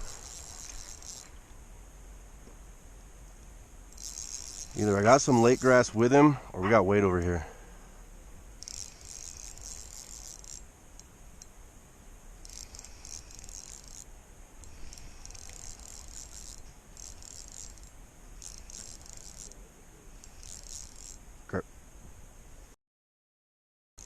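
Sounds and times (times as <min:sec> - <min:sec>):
fishing reel gears whirring: 0:00.0 - 0:01.4, 0:03.9 - 0:06.3, 0:08.6 - 0:11.6, 0:12.4 - 0:21.2.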